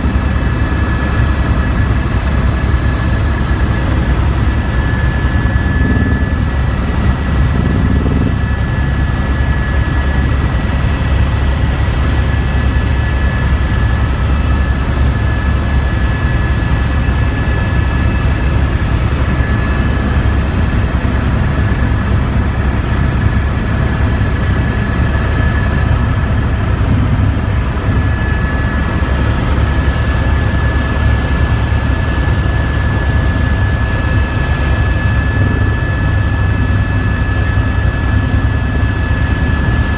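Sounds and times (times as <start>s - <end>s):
helicopter engine and rotor: 0.0s - 39.9s.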